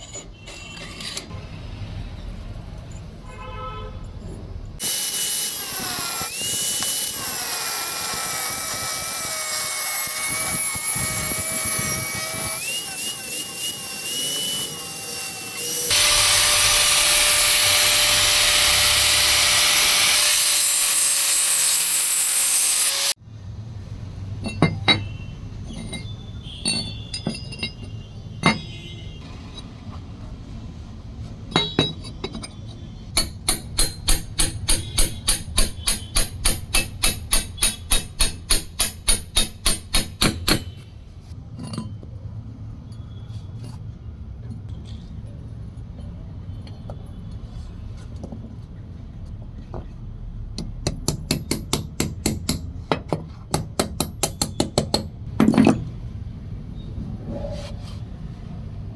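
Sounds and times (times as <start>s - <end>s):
hammer striking metal: 31.5s - 32.5s, 33.2s - 40.8s.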